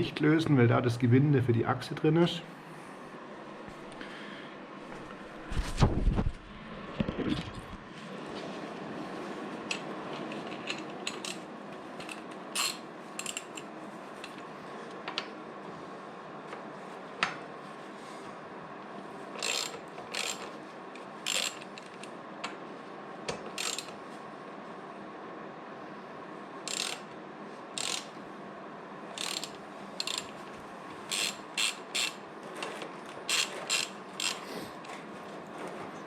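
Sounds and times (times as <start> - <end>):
background hiss and hum: 0.0 - 36.0
ratchet wrench clicking: 10.6 - 11.4, 12.0 - 13.7, 19.4 - 20.5, 21.2 - 22.1, 23.5 - 23.9, 26.7 - 27.1, 27.8 - 28.2, 29.2 - 30.4, 31.1 - 32.2, 33.3 - 34.4.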